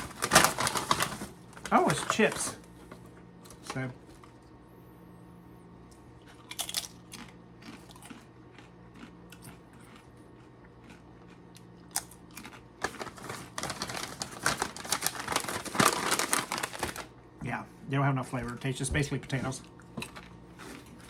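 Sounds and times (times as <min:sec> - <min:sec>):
potato chips crunching: 0:06.2 - 0:17.1, 0:19.4 - 0:21.0.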